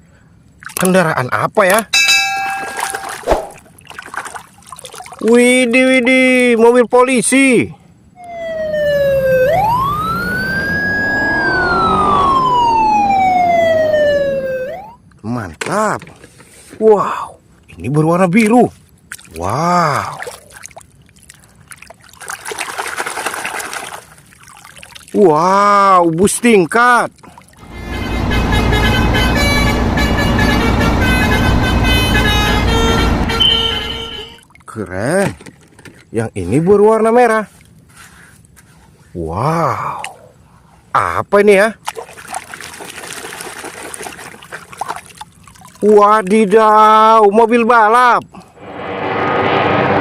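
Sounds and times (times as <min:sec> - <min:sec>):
steady high tone: 0:02.0 - 0:03.3, 0:08.2 - 0:15.0, 0:27.6 - 0:34.4, 0:48.6 - 0:50.0
police siren wailing: 0:08.2 - 0:15.0, 0:27.6 - 0:34.0
heavy engine rumble: 0:27.6 - 0:34.0
horn notes stepping in pitch: 0:27.6 - 0:34.4
low rumble: 0:48.4 - 0:50.0.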